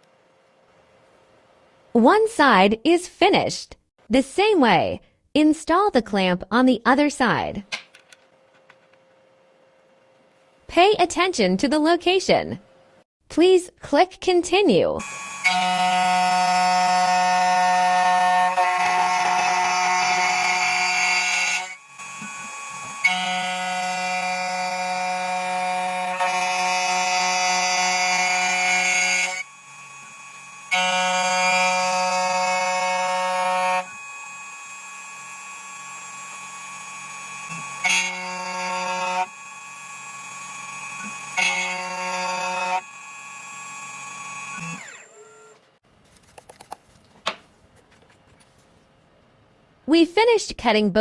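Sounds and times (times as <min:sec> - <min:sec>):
key cutting machine whine: 0:15.0 - 0:45.6.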